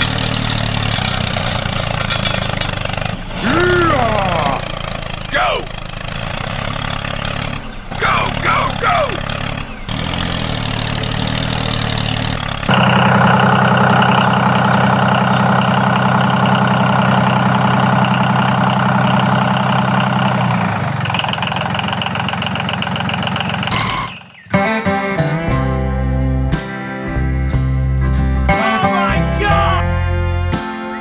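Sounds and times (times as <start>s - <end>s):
small engine running: 9.2s - 24.0s.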